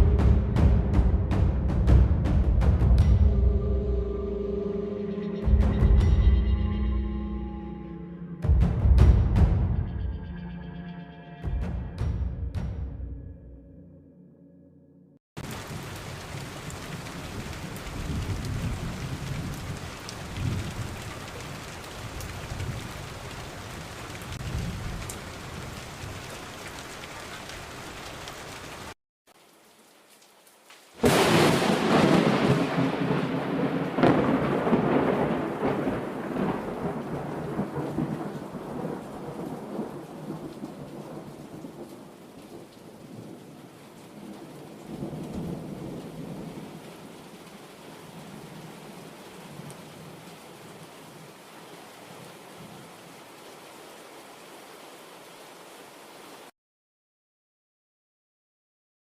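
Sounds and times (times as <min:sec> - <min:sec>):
loud thunderclap: 0:00.0 - 0:03.5, 0:31.0 - 0:41.9
low rolling thunder: 0:00.0 - 0:04.1, 0:15.6 - 0:23.0, 0:31.0 - 0:43.4, 0:44.2 - 0:46.9
steady rain: 0:00.0 - 0:06.0, 0:15.4 - 0:56.5.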